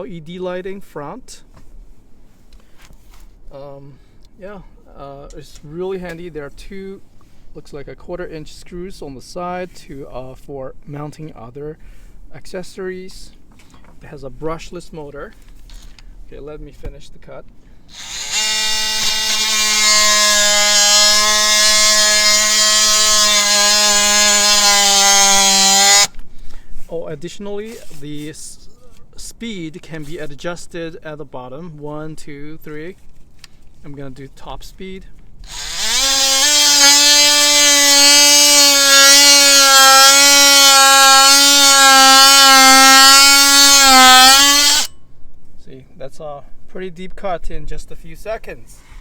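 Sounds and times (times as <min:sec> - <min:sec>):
oscillating multi-tool cutting wood: 0:17.9 - 0:26.2, 0:35.4 - 0:44.9.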